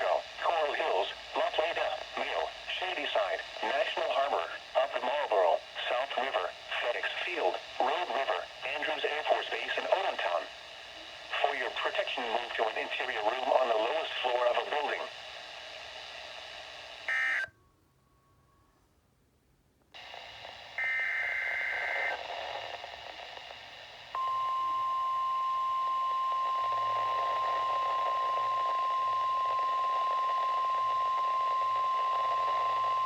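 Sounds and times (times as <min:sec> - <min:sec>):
receiver hiss: 0:00.0 - 0:17.5, 0:20.0 - 0:33.0
steady alarm tone: 0:17.1 - 0:17.5, 0:24.2 - 0:33.0.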